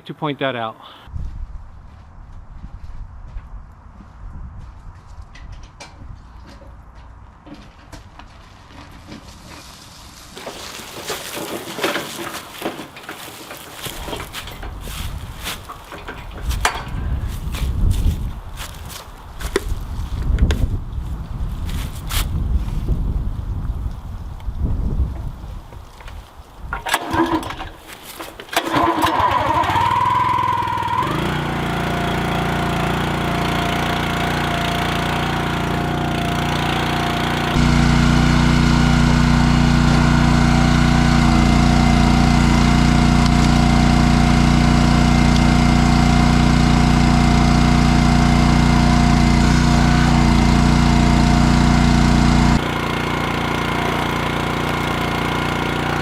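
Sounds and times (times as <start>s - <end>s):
small gasoline engine starting and running: 10.4s - 17.7s, 26.7s - 56.0s.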